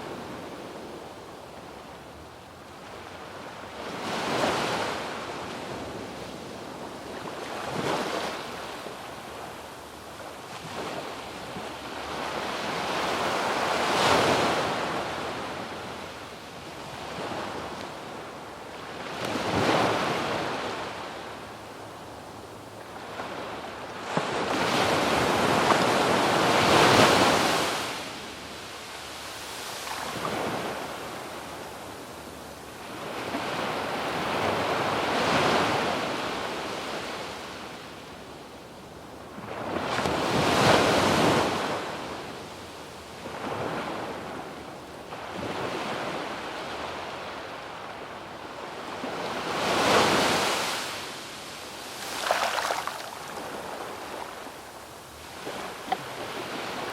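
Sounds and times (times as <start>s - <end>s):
ocean waves breaking on beach: 10.2s - 21.6s, 22.2s - 38.0s, 39.2s - 56.9s.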